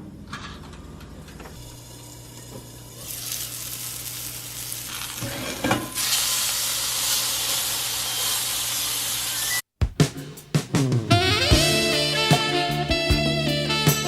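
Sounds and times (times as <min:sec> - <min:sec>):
burger patties sizzling in a pan: 0:01.6 - 0:09.6.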